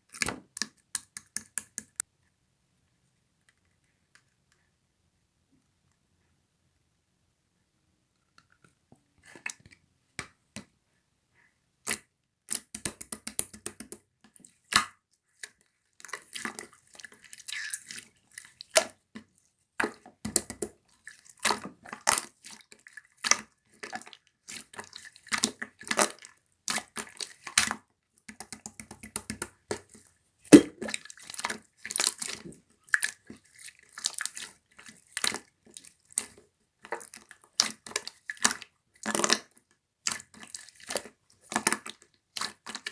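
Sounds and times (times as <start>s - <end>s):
slime squished by hand: 30.5s - 31.0s.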